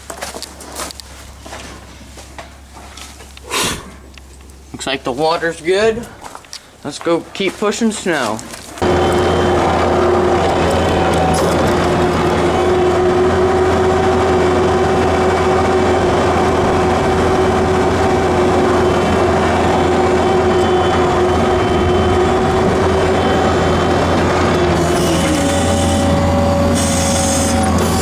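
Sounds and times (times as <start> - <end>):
diesel engine running: 8.5 - 28.0
steady whine: 8.8 - 28.0.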